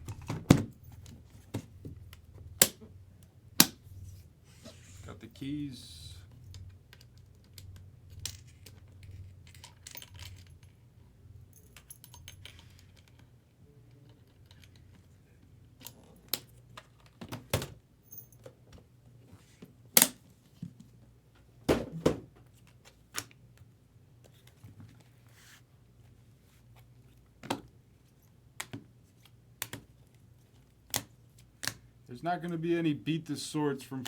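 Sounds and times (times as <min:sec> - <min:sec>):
keys jingling: 0:08.1 - 0:10.8, 0:11.4 - 0:13.0.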